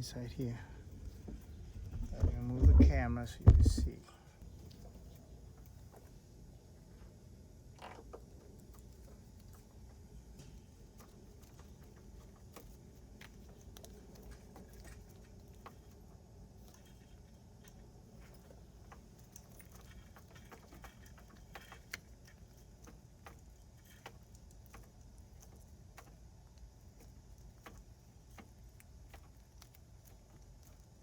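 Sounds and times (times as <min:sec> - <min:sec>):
small clicks and taps: 0:10.4 - 0:31.0.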